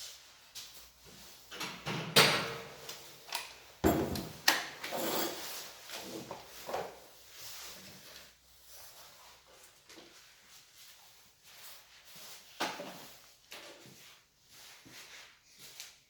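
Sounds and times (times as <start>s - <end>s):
packaging scrapes and rustles: 4.9s - 9.7s.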